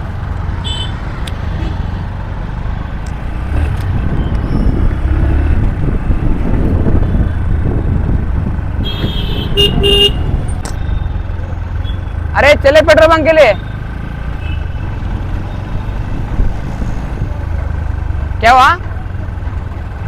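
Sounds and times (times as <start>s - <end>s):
motorcycle engine: 0.0s - 20.0s
traffic noise: 0.0s - 20.0s
wind rumble on microphone: 3.4s - 11.0s, 14.9s - 17.6s.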